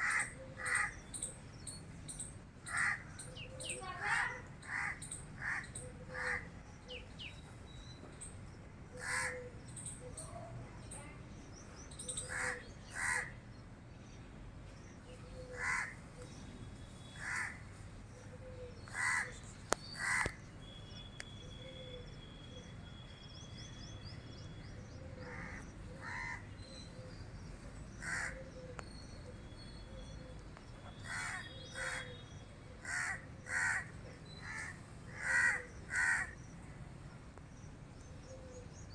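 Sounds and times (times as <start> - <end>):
crows cawing: 0.0 - 1.0, 2.6 - 3.1, 4.0 - 6.5, 9.0 - 9.5, 12.3 - 13.4, 15.5 - 16.0, 17.2 - 17.6, 18.9 - 19.4, 20.0 - 20.4, 25.2 - 26.5, 28.0 - 28.7, 31.0 - 32.2, 32.8 - 36.4.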